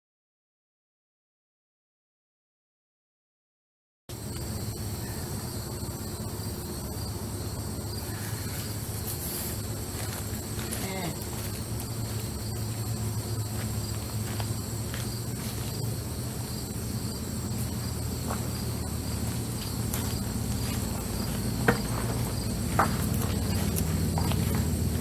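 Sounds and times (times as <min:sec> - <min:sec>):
crickets chirping: 0:04.1 - 0:25.0
low rumble: 0:11.2 - 0:25.0
sharp knocks: 0:21.6 - 0:23.5.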